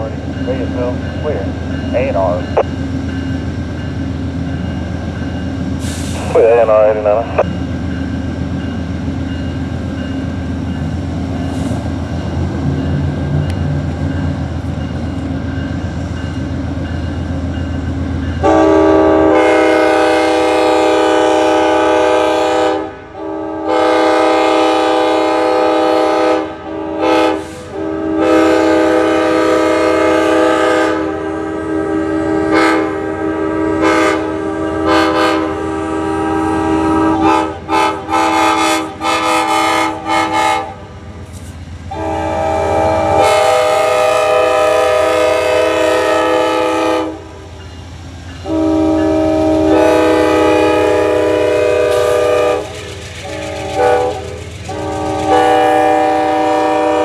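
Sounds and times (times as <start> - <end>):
train air horn blasts: 18.4 - 40.8, 41.9 - 47.3, 48.4 - 57.0
locomotive engine running: 34.2 - 57.0.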